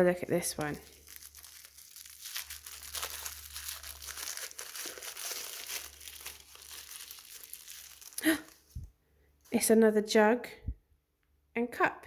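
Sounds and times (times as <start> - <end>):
wrapping crumpled and torn: 0.4 - 8.8.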